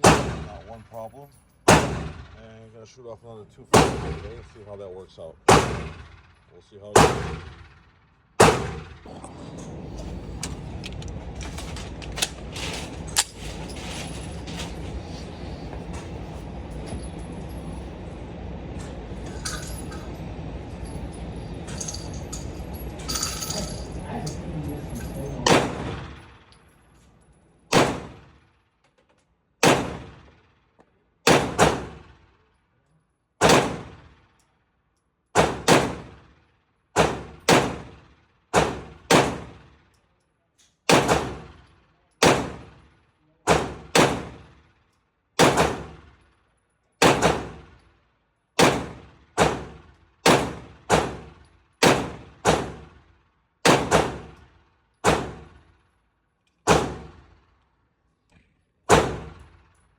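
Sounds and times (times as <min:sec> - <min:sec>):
pistol shots echoing: 0:00.0 - 0:00.5, 0:01.7 - 0:02.2, 0:03.7 - 0:04.2, 0:05.5 - 0:06.0, 0:07.0 - 0:07.6, 0:08.4 - 0:09.0, 0:25.4 - 0:26.1, 0:27.7 - 0:28.3, 0:29.6 - 0:30.2, 0:31.3 - 0:32.0, 0:43.5 - 0:44.4, 0:45.4 - 0:46.0, 0:47.0 - 0:47.6, 0:48.6 - 0:51.2, 0:51.8 - 0:52.8, 0:53.6 - 0:54.3, 0:58.9 - 0:59.3.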